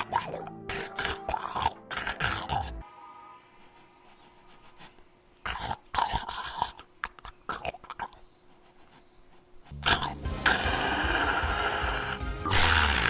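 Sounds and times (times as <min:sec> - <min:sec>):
man snarling and grunting: 0:09.7 - 0:13.0.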